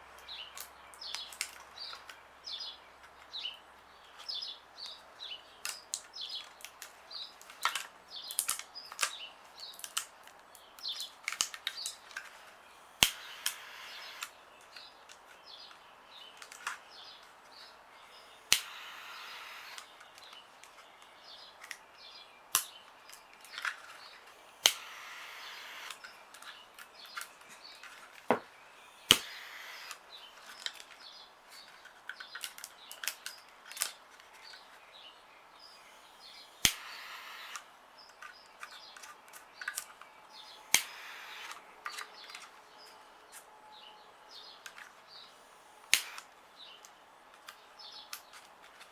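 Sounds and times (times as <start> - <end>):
birds chirping: 0.0 - 9.9, 10.5 - 48.9
lighter flame hissing: 12.9 - 14.3, 18.2 - 19.8, 24.4 - 26.0, 28.9 - 30.0, 35.8 - 37.6, 40.5 - 41.6
lighter clicking: 18.4 - 19.8, 24.5 - 26.0, 36.6 - 37.6, 40.7 - 41.6.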